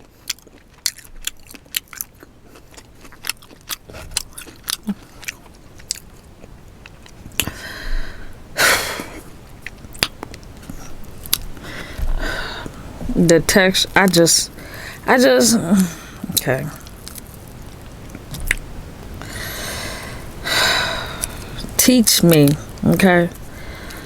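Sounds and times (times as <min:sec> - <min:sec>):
chewing: 0:00.0 - 0:07.6, 0:09.6 - 0:12.8.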